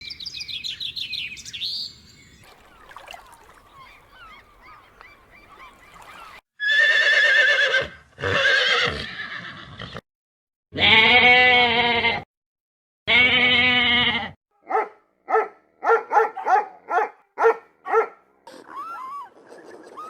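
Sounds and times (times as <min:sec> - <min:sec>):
faint bird chirping: 0:00.0 - 0:06.4
horse whinnying: 0:06.6 - 0:10.0, 0:10.8 - 0:12.2
trembling bleat: 0:10.8 - 0:12.2, 0:13.1 - 0:14.4.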